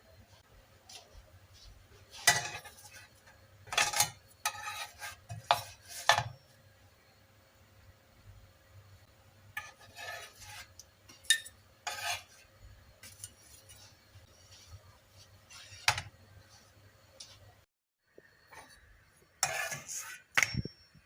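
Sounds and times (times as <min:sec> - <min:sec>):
utensils and dishes clinking: 0:11.1 - 0:12.3.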